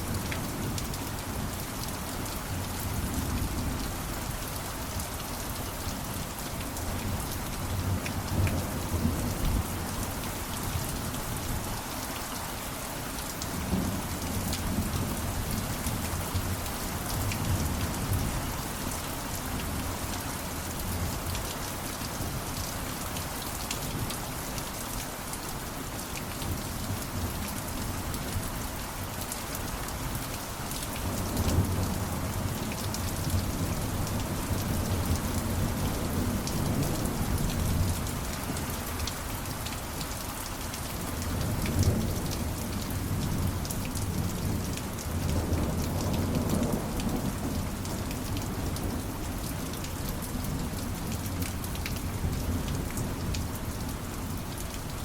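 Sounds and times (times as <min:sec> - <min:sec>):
steady rainfall: 0:00.0 - 0:55.0.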